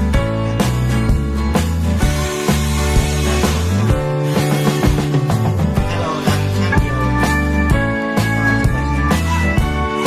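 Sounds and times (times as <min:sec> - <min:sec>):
upbeat background music: 0:00.0 - 0:10.0.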